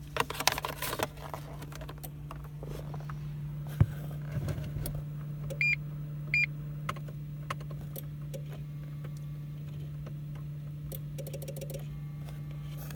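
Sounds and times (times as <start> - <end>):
steady electrical hum: 0.0 - 12.9.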